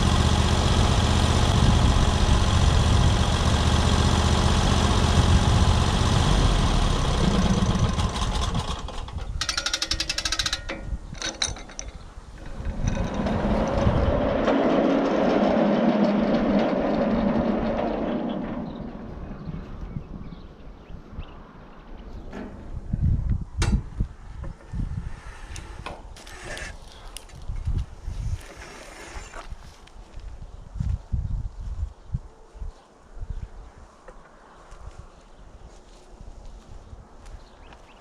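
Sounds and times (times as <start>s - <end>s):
sawmill engine cutting log: 0.0s - 8.9s, 25.5s - 26.8s
rapid clatter: 0.0s - 10.7s, 11.3s - 19.0s.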